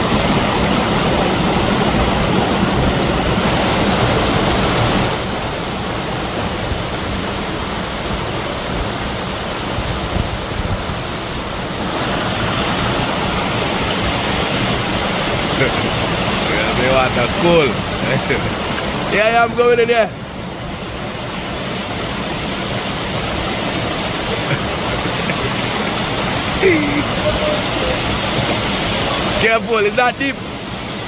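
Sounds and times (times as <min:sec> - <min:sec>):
waterfall roaring: 0:03.4 - 0:12.4.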